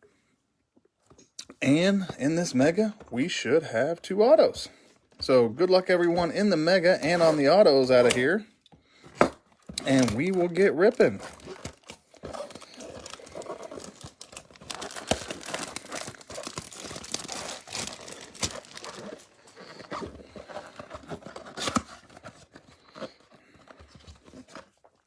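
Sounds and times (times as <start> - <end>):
packaging tearing and crinkling: 9.7 - 24.8.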